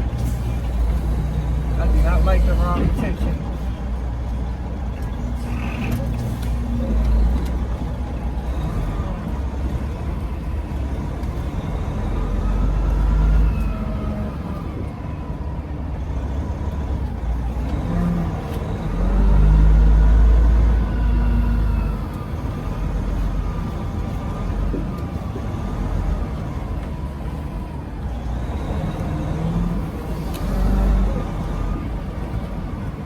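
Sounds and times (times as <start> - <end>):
diesel truck engine rumbling: 0.0 - 33.0.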